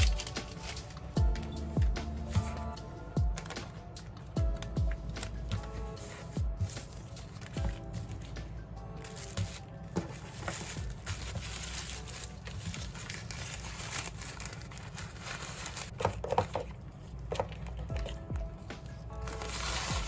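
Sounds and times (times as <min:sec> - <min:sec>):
packaging crinkling: 0:00.0 - 0:01.2, 0:05.0 - 0:08.3, 0:09.0 - 0:18.2, 0:19.2 - 0:20.0
quiet lo-fi background music: 0:00.0 - 0:20.0.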